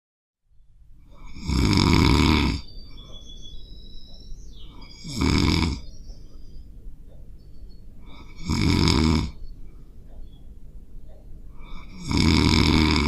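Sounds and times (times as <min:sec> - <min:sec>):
dog snoring: 0:01.1 - 0:02.7, 0:04.7 - 0:05.9, 0:08.0 - 0:09.4, 0:11.6 - 0:13.0.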